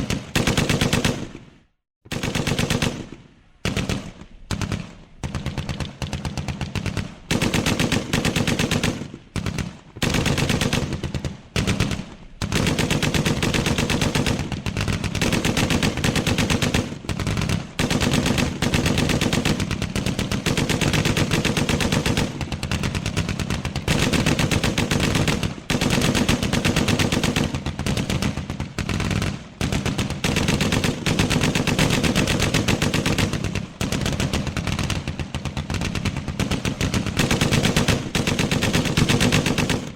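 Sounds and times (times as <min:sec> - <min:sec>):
machine-gun fire: 0:00.0 - 0:01.4, 0:02.1 - 0:39.9.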